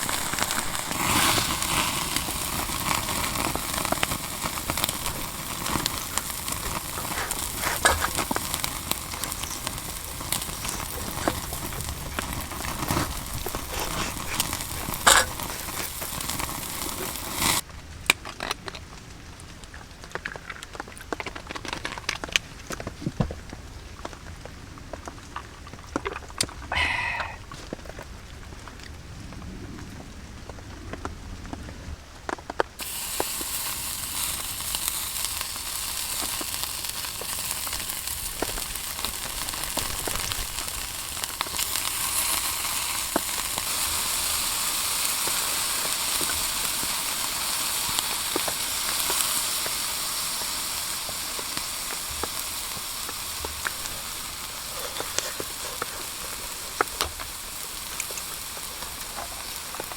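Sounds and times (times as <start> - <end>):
heavy rain hissing: 0.0 - 17.6, 26.6 - 29.2, 32.8 - 59.9
raindrops ticking: 34.4 - 59.9.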